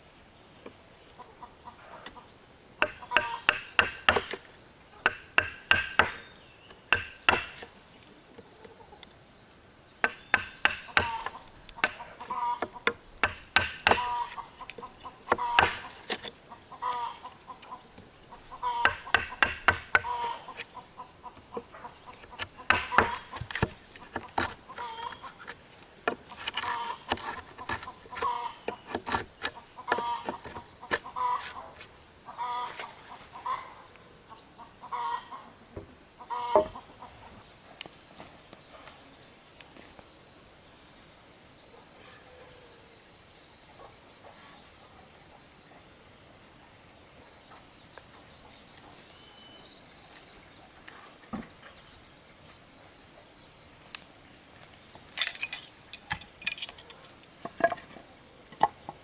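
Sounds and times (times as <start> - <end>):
high drone of insects: 0.0 - 59.0
chickens clucking: 26.1 - 33.8.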